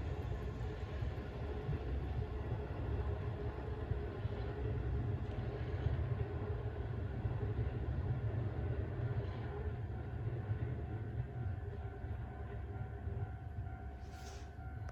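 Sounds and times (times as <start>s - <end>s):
electric train rumble: 0.0s - 14.9s
faint steady tones: 9.5s - 14.9s.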